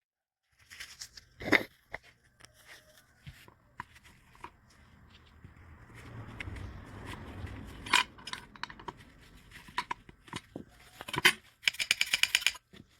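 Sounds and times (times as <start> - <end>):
tools clicking and tapping: 6.0 - 12.9.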